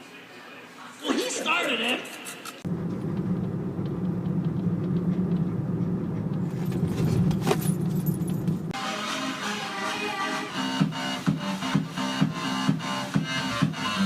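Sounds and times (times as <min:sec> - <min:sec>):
vehicle motor rumble: 0:02.7 - 0:08.8
music: 0:08.8 - 0:14.0.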